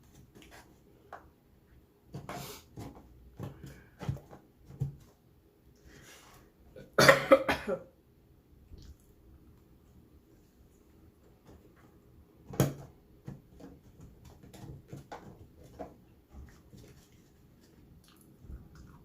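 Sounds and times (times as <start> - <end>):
woman coughing: 6.8 - 7.9.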